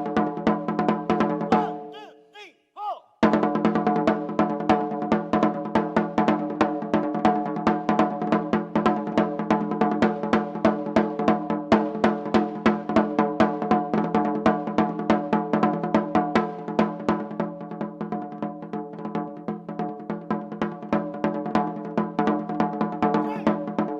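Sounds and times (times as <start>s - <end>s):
barrel drum drumming fast: 3.2s - 17.7s, 20.6s - 23.9s.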